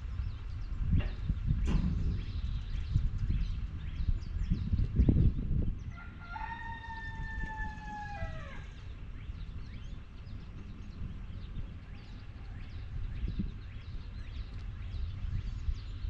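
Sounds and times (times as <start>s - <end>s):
rooster crowing: 5.9s - 8.8s.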